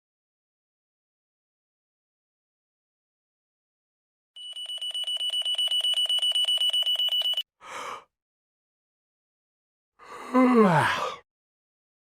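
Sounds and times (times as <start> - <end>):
alarm ringing: 4.4 - 7.4.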